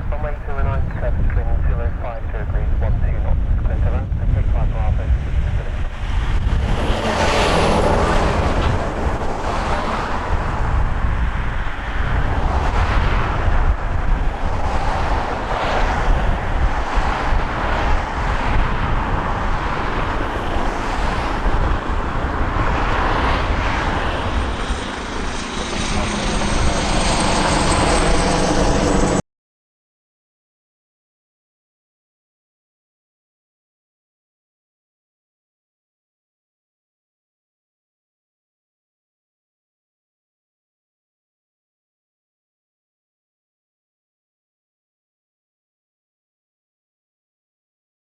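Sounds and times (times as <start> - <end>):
jet engines roaring with high whine: 0.0 - 29.2.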